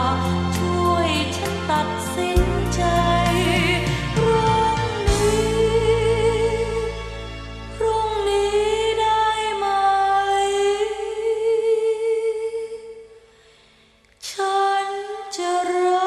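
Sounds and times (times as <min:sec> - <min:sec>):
woman singing with vibrato: 0:00.0 - 0:07.1, 0:07.8 - 0:13.2, 0:14.3 - 0:16.0
sharp breath: 0:13.2 - 0:14.0.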